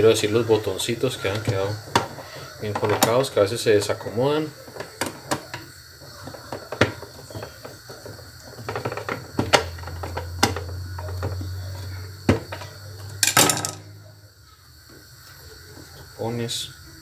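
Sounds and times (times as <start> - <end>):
low steady hum: 8.4 - 14.8.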